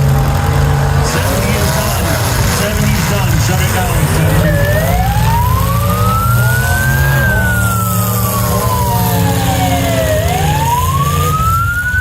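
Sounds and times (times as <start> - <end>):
car engines rumbling: 0.0 - 12.0
siren wailing: 3.7 - 12.0.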